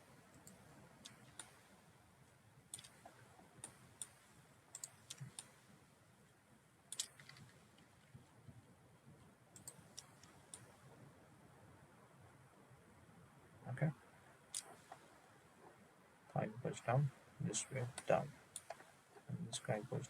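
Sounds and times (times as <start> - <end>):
computer mouse clicks: 0.3 - 1.7, 2.7 - 5.7, 6.9 - 8.6, 9.6 - 10.9, 14.5 - 15.1, 17.7 - 19.8.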